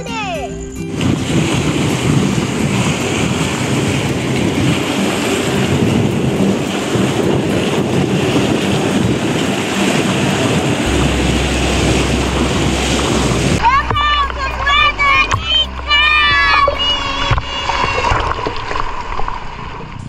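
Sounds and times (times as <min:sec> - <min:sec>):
wind blowing across microphone: 0:00.8 - 0:14.0
deep low rumble: 0:10.4 - 0:20.0.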